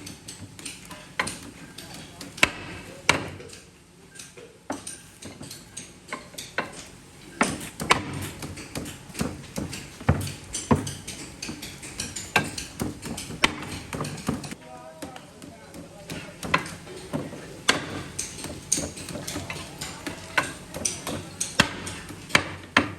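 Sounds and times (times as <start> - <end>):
hammer on metal: 15.7 - 22.9.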